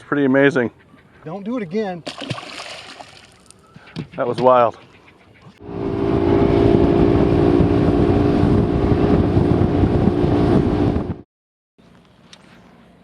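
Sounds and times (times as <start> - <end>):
wind rushing over microphone: 5.6 - 11.2.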